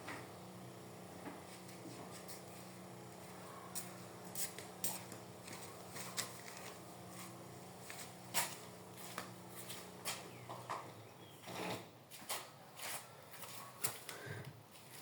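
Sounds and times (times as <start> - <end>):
electric fan motor hum: 0.0 - 11.8.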